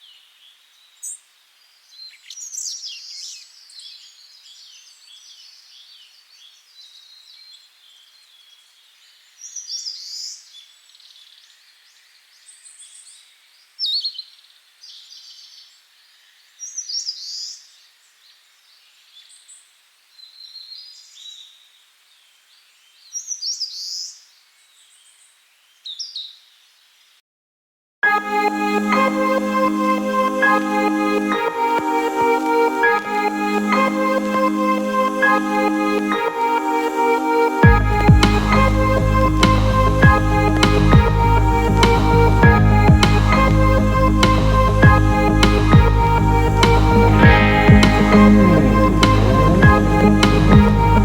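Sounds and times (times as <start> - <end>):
faint outdoor hiss: 0.0 - 27.2.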